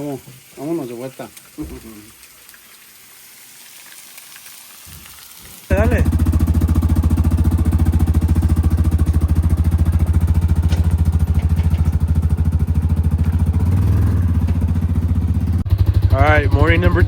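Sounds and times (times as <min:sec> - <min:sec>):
utility vehicle engine running: 0:05.7 - 0:17.0.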